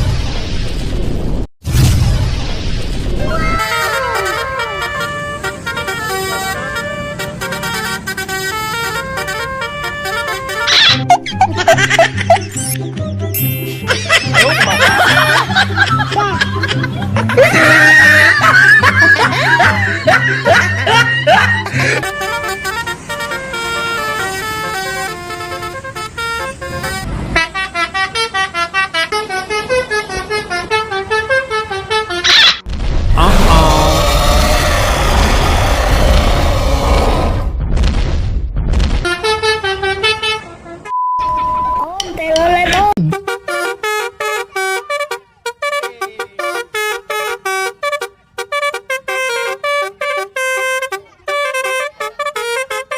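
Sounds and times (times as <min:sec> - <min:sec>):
bus horn playing a melody: 0:03.6 - 0:11.8, 0:14.7 - 0:32.3, 0:39.0 - 0:41.0, 0:43.0 - 0:52.9
low rumble: 0:32.7 - 0:38.9.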